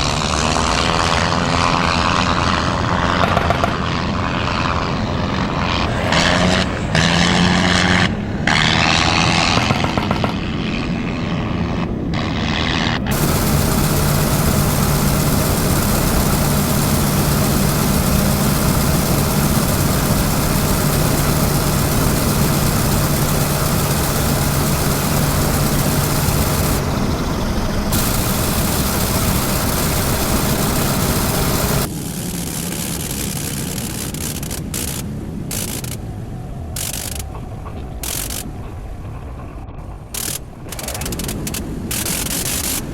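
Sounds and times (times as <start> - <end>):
rotary aero engine running: 12.7 - 36.1, 36.7 - 38.7, 39.9 - 42.9.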